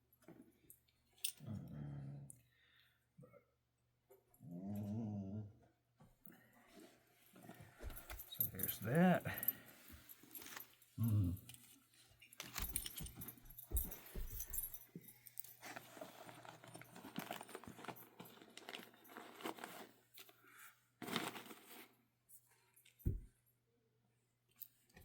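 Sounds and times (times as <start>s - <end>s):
camping gear rustling in bag: 7.3s - 11.0s, 15.5s - 20.1s
light metallic jingles: 7.8s - 15.7s.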